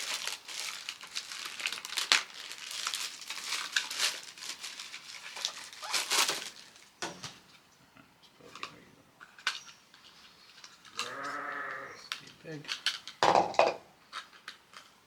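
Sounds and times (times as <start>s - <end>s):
plastic packaging crinkling: 0.0s - 6.9s.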